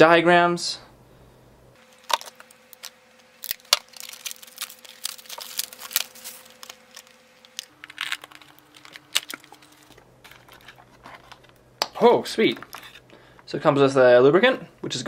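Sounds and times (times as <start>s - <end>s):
packaging rustling and crinkling: 1.8s - 11.6s, 12.3s - 13.4s.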